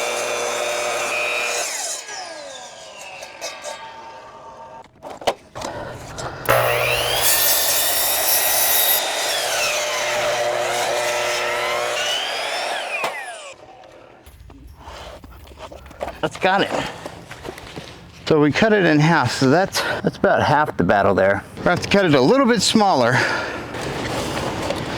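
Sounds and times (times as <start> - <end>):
miter saw motor whining: 0.0 - 4.8, 5.7 - 13.6.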